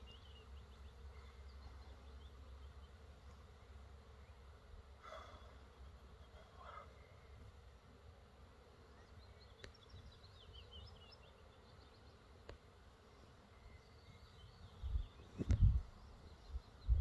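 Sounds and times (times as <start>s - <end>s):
birds chirping: 4.2s - 7.4s.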